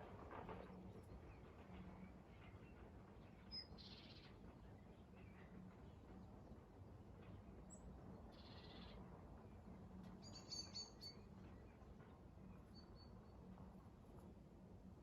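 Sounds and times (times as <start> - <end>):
quiet outdoor background: 0.0 - 15.0.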